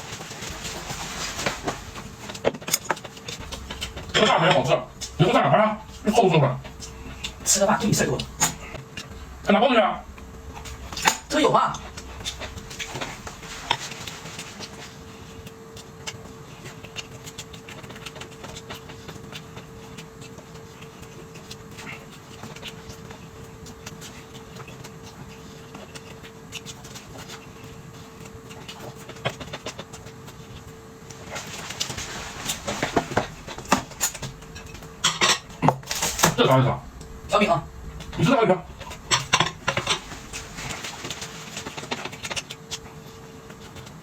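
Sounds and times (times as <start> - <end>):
chewing: 0.0 - 44.0
steady hum: 0.0 - 44.0.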